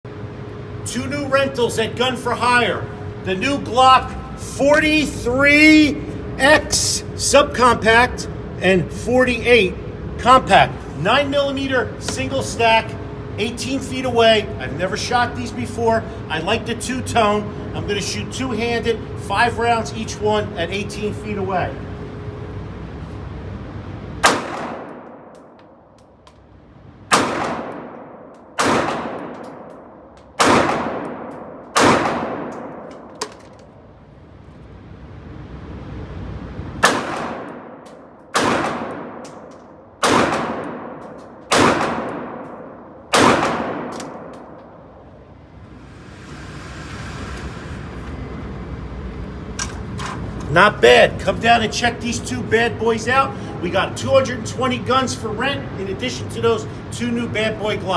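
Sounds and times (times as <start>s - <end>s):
pistol shots ringing: 24.2s - 25.8s, 27.1s - 33.1s, 36.8s - 44.6s.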